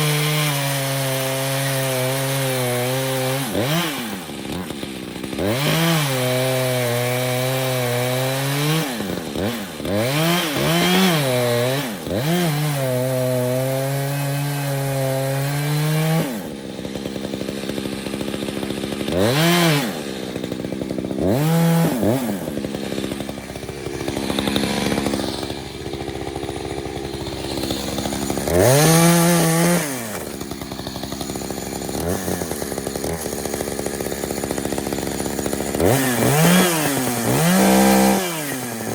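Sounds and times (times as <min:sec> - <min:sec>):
chainsaw cutting and idling: 0:00.0 - 0:38.9.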